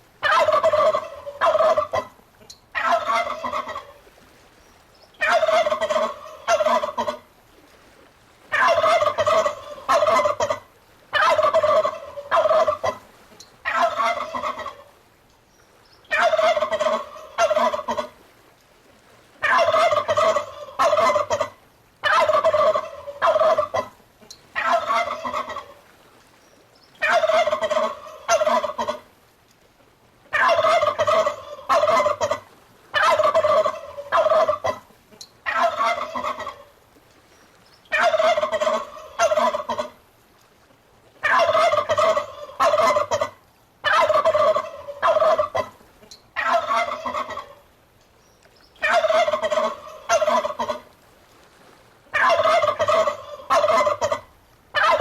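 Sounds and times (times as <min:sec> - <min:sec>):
turkey gobbling: 0:00.2 - 0:04.0, 0:05.2 - 0:07.2, 0:08.5 - 0:13.0, 0:13.6 - 0:14.9, 0:16.1 - 0:18.1, 0:19.4 - 0:23.9, 0:24.6 - 0:25.8, 0:27.0 - 0:29.0, 0:30.3 - 0:36.7, 0:37.9 - 0:40.0, 0:41.2 - 0:47.6, 0:48.8 - 0:50.9, 0:52.1 - 0:55.0.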